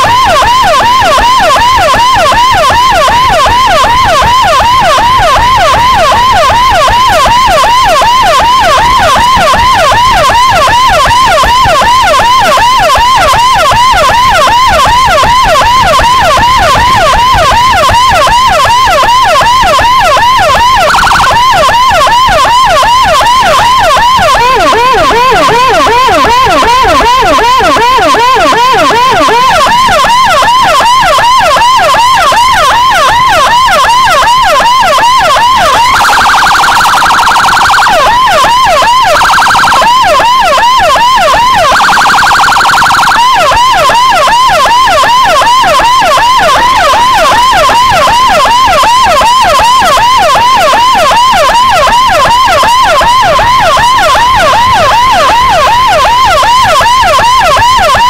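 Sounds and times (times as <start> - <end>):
electronic siren yelp: 0.0 - 58.0
blaring horn tone: 24.1 - 30.7.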